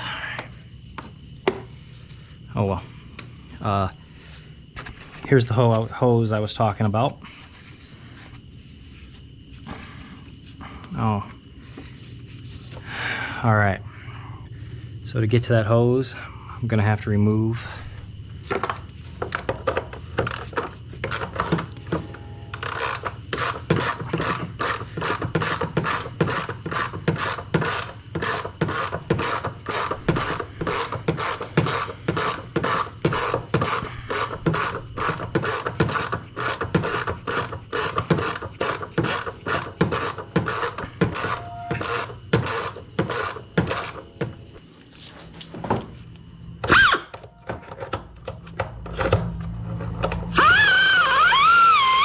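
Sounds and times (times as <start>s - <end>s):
ratchet wrench clicking: 22.6s - 44.0s.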